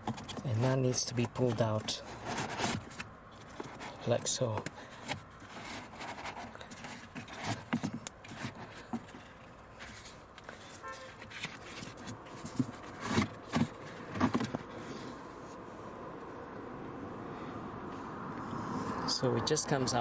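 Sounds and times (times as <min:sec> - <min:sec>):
plastic scraping and rubbing: 0:00.0 - 0:15.6.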